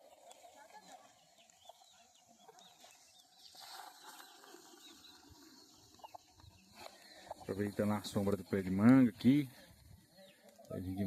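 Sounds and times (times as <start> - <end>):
bird chirps: 0.9 - 9.3.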